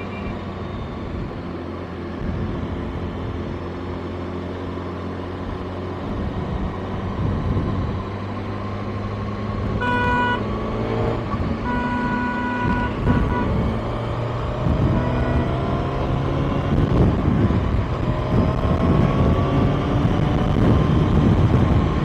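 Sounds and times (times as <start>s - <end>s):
vehicle horn beeping: 0.0s - 0.5s, 9.8s - 10.6s, 11.6s - 13.8s
motorcycle engine running: 0.0s - 22.0s.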